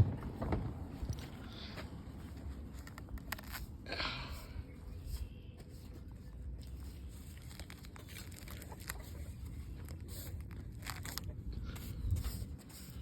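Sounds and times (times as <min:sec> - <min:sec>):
steady low rumble: 0:00.0 - 0:13.0
weeds snapping and crackling: 0:02.8 - 0:03.8, 0:07.3 - 0:11.3.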